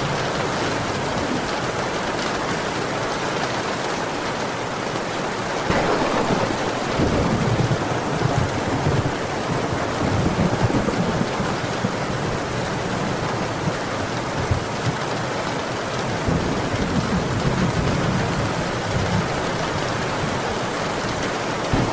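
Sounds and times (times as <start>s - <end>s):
heavy rain: 0.0s - 21.9s
thunder rumble: 5.7s - 14.7s.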